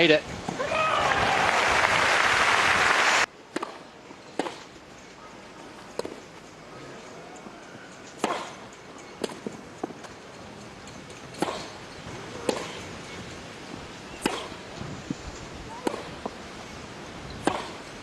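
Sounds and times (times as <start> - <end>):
crowd applauding: 1.0 - 3.3
racket striking tennis ball: 3.5 - 4.8, 5.9 - 6.3, 8.1 - 13.3, 14.1 - 15.0, 15.7 - 16.4, 17.4 - 18.0
tennis ball bouncing: 3.5 - 4.8, 5.7 - 6.4, 8.0 - 14.8, 15.7 - 16.7, 17.3 - 18.0.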